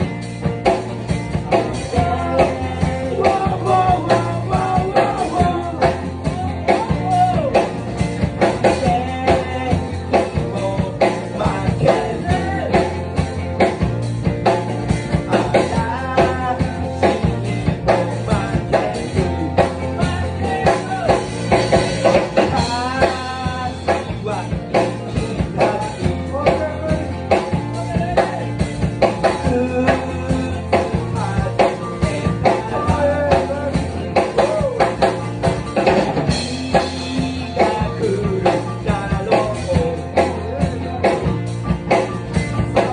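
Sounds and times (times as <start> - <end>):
bass guitar: 0.0 - 42.9
drum kit beat: 0.0 - 42.9
electric guitar: 0.0 - 42.9
person singing: 1.4 - 13.2, 15.1 - 42.9.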